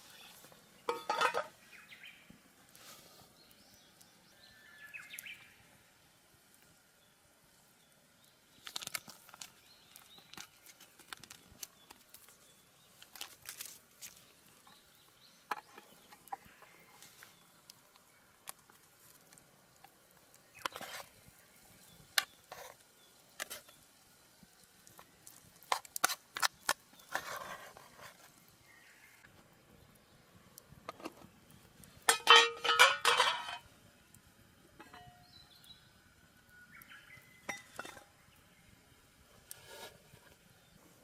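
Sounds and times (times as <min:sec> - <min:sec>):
rustling and crinkling: 0:08.6 - 0:14.9, 0:24.8 - 0:28.5.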